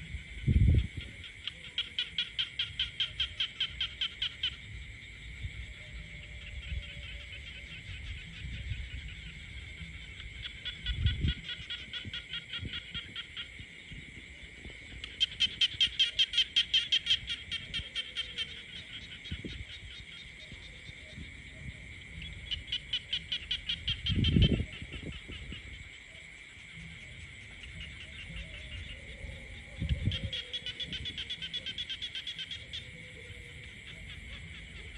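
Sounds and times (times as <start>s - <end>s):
frogs croaking: 0.0s - 34.9s
high frog chorus: 0.0s - 34.9s.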